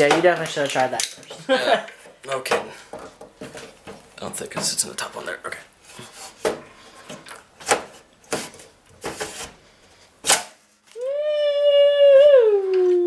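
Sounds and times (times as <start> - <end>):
dog howling: 11.0 - 13.0.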